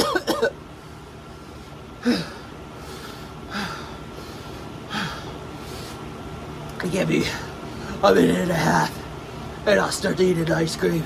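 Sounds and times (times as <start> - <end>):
man breathing out hard: 1.4 - 6.1.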